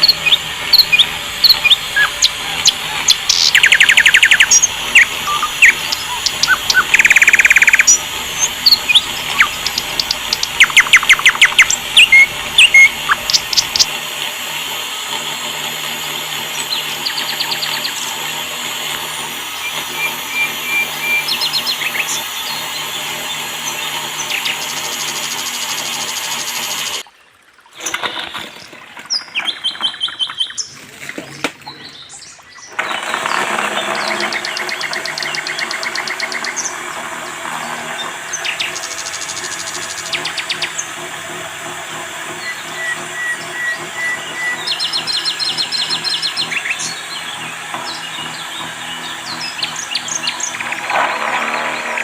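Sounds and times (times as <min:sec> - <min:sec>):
insects hissing: 0:00.0 - 0:13.9
birds chirping: 0:00.0 - 0:14.0, 0:15.5 - 0:52.0
steady whirring noise: 0:00.0 - 0:27.0, 0:31.4 - 0:52.0.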